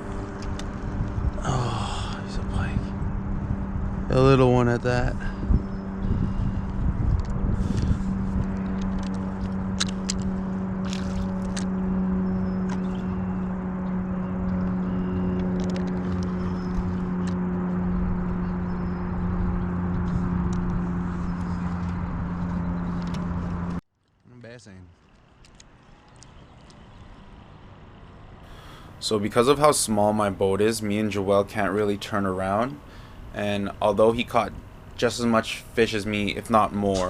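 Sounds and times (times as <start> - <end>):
small motor humming: 5.2 - 23.7
sharp clicks and scrapes: 7.1 - 11.7.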